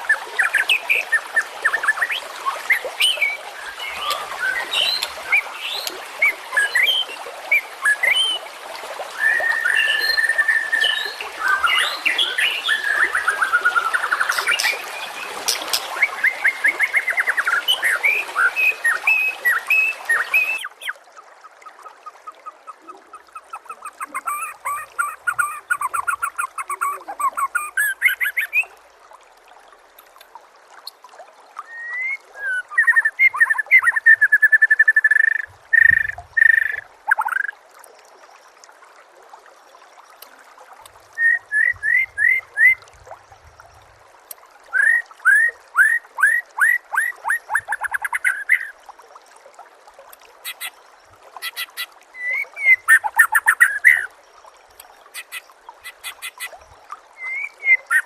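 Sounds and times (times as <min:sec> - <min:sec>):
songbird trills and chirps: 0:22.4 - 0:28.7.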